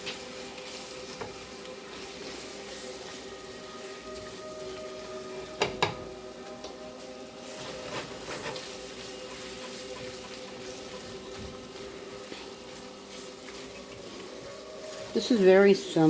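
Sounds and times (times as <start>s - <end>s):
food sizzling in pan: 0.0s - 16.0s
utensil knocking on pan: 5.6s - 6.1s.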